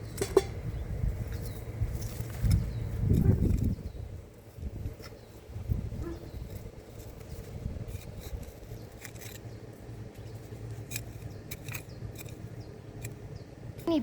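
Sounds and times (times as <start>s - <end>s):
steady low rumble: 0.0s - 14.0s
hand shovel scraping soil: 6.0s - 9.5s, 10.2s - 13.2s.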